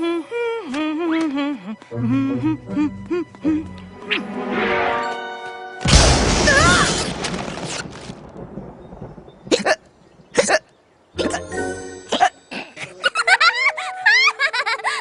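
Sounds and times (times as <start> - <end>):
loud crash effect: 5.8 - 8.2.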